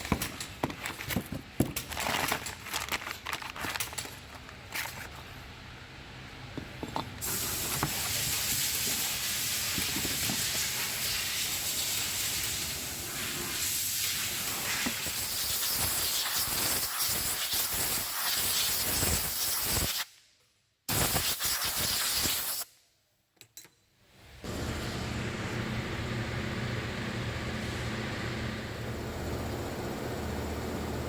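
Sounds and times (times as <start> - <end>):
pressurised spray hissing: 7.2 - 20.1.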